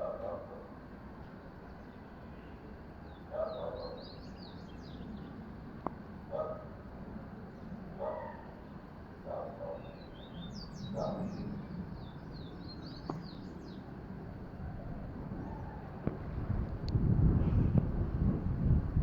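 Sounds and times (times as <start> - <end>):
steady low hum: 0.0 - 19.0
small birds chirping: 1.2 - 5.6, 7.3 - 16.2.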